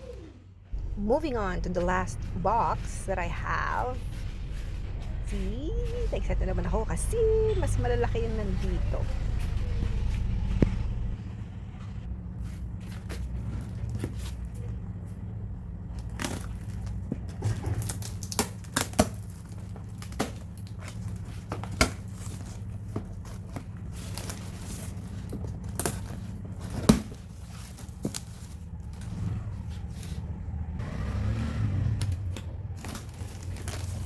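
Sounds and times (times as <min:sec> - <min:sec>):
low steady hum: 0:00.0 - 0:30.8
cardboard cracking and rustling: 0:15.8 - 0:30.3, 0:32.1 - 0:34.0.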